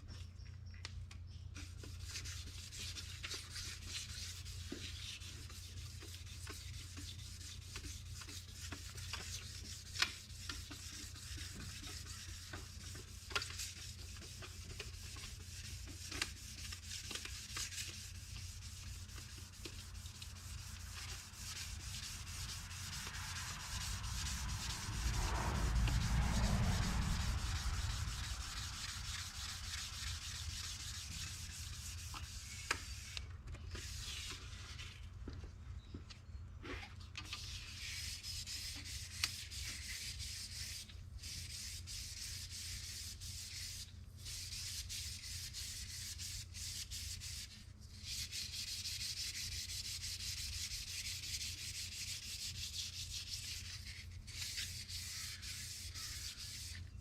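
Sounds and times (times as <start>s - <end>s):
sandpaper rubbing on metal: 1.6s - 33.2s, 37.3s - 56.9s.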